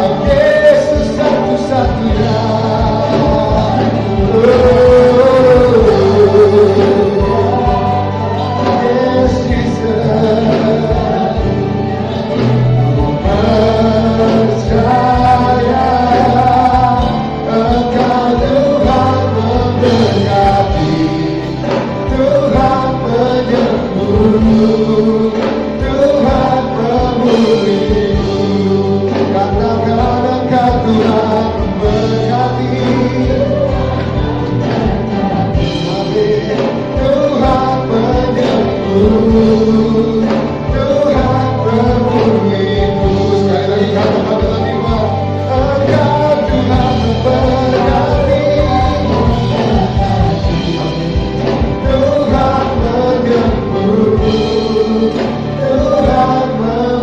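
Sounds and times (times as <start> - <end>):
band accompaniment with bass: 0.0 - 57.0
choir singing gospel song: 0.0 - 57.0.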